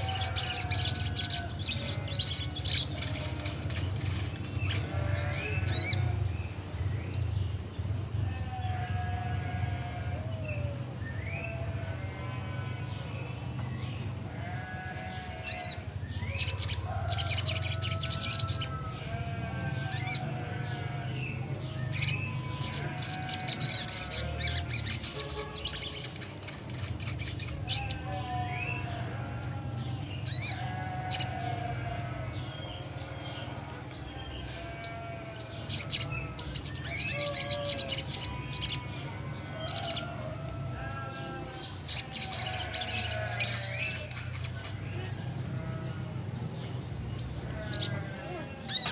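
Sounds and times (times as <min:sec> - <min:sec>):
songbird singing: 0:00.0 - 0:48.9.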